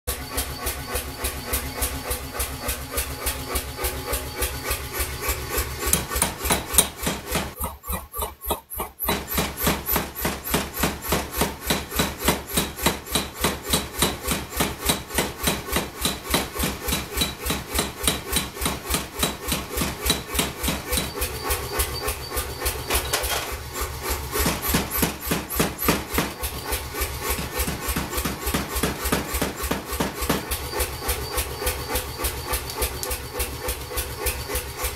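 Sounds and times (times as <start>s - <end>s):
forging hammer striking steel: 5.5s - 23.6s, 24.4s - 32.0s.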